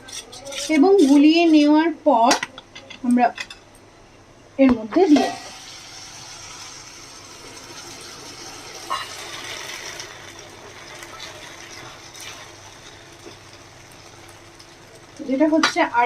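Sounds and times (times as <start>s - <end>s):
pan sizzling: 5.0s - 16.0s.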